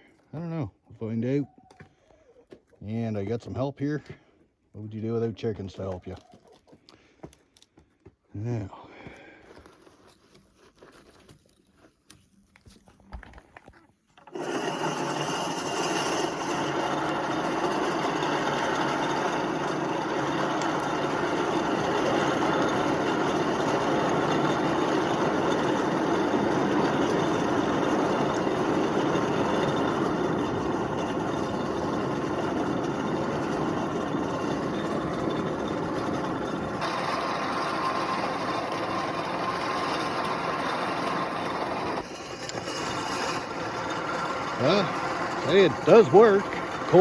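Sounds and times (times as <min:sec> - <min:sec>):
forge blower rushing air: 0:14.3 - 0:47.0.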